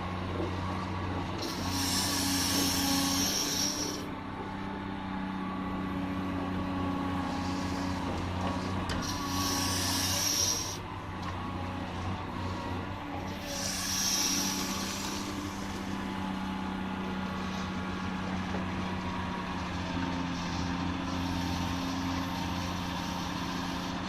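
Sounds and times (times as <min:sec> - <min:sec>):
excavator diesel engine running: 0:00.0 - 0:24.0
hydraulic hissing and whine: 0:01.3 - 0:04.4, 0:07.1 - 0:11.6, 0:12.3 - 0:24.0.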